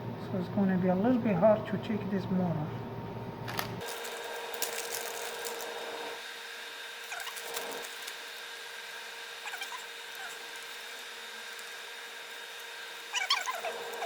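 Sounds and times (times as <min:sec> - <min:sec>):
steady thin whine: 0:03.8 - 0:14.0.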